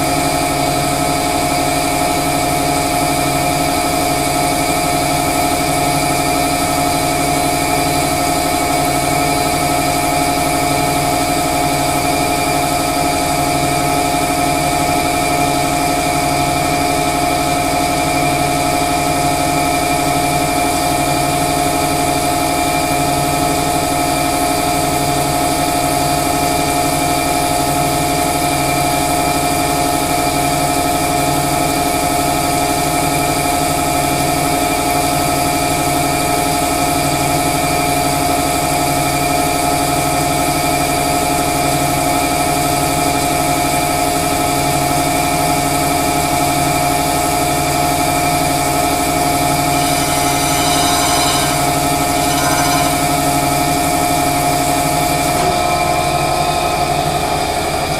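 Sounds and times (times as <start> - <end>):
crankshaft grinder running: 49.0 - 54.6.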